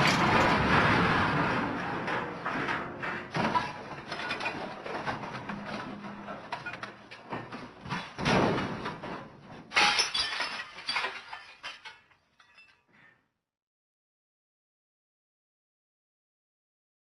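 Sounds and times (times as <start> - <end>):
glass breaking crash: 9.7 - 12.7
falling pieces clinking: 9.8 - 12.9.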